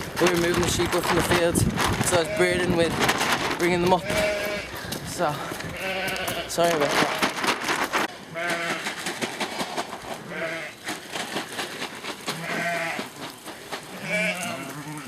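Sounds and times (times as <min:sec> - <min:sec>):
sheep and lambs bleating: 0:02.0 - 0:02.8, 0:03.9 - 0:04.8, 0:05.6 - 0:06.8, 0:08.3 - 0:08.9, 0:10.2 - 0:10.8, 0:12.4 - 0:13.1, 0:13.9 - 0:15.0.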